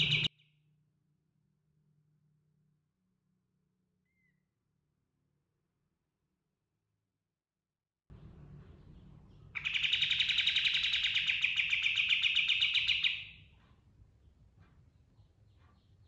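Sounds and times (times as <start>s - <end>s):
songbird rolling trill: 0.0s - 0.3s, 9.6s - 13.4s
faint bird chips: 0.0s - 0.4s.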